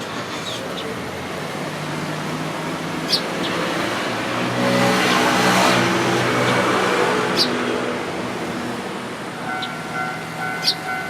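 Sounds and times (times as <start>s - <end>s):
vehicle engine passing: 0.2s - 11.0s
sparrow chirps: 2.9s - 3.9s, 7.3s - 7.6s, 9.4s - 11.0s.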